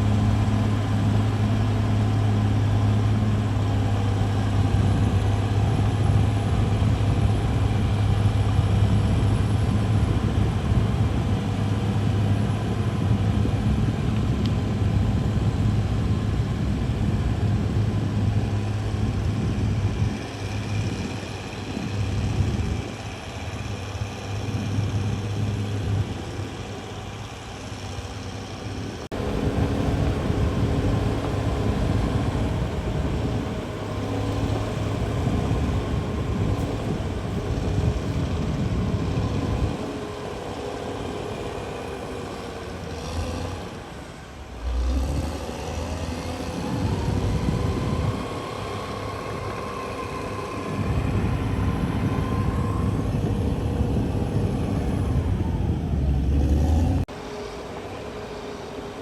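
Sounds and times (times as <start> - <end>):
bulldozer diesel engine: 0.0 - 59.0
rising whine: 29.1 - 59.0.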